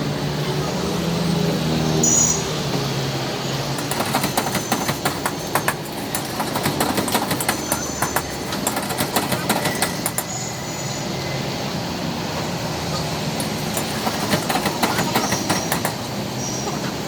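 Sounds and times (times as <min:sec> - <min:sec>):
street traffic noise: 0:00.0 - 0:17.0
sharp taps and clicks: 0:03.8 - 0:10.3, 0:13.4 - 0:16.1.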